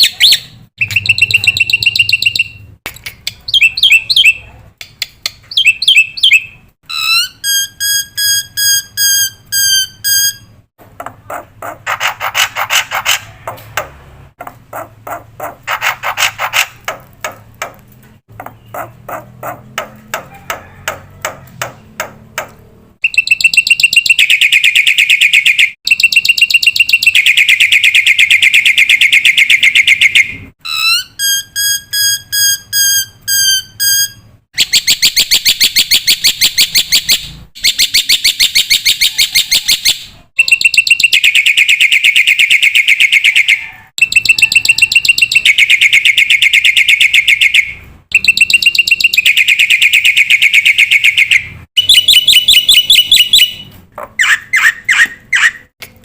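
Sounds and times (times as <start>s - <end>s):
bird chattering pulses: 14.7s - 17.0s, 18.4s - 20.6s.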